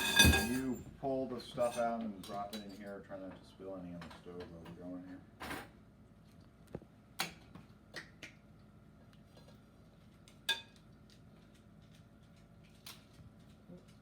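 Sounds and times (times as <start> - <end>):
metal utensils clinking on pot: 0.0 - 0.8.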